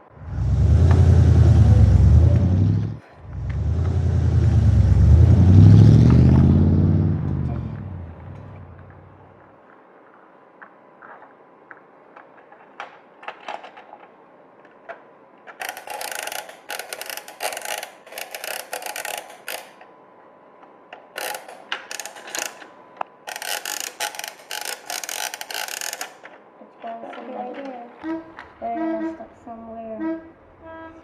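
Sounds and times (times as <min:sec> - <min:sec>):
plastic toy cars clattering: 0:12.2 - 0:19.9, 0:21.0 - 0:22.7, 0:23.3 - 0:28.6.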